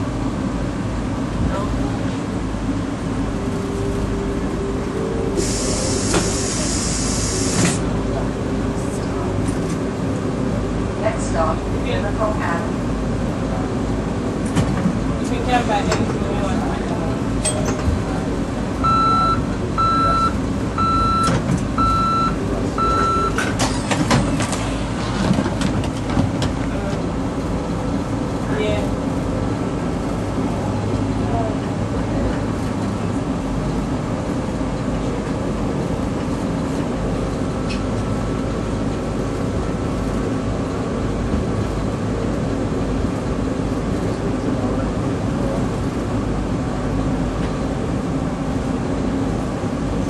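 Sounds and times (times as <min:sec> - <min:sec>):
rail car rumble: 0:00.0 - 0:50.0
loud hiss: 0:05.4 - 0:07.8
electronic warning beeps: 0:18.8 - 0:23.4.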